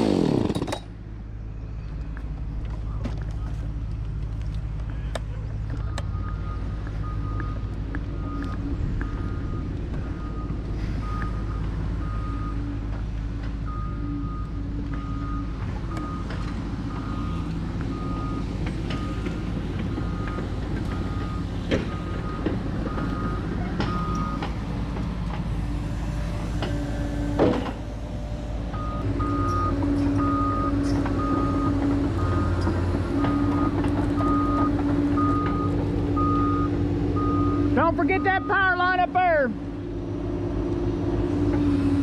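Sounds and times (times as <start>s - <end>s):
heavy machine engine running: 5.5s - 42.0s
backup alarm beeping: 5.8s - 12.6s, 28.8s - 39.2s.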